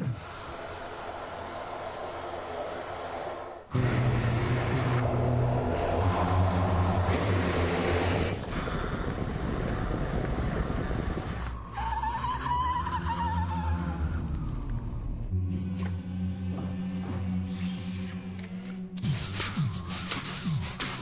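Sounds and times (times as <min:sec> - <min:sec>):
loud engine holding revs: 0:03.7 - 0:11.6.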